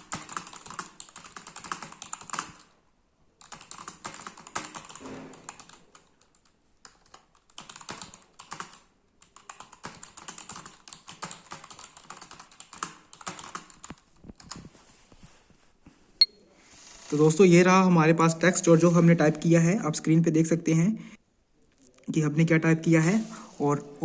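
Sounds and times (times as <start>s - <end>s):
fast typing on keyboard: 0.0s - 2.8s, 3.4s - 14.7s.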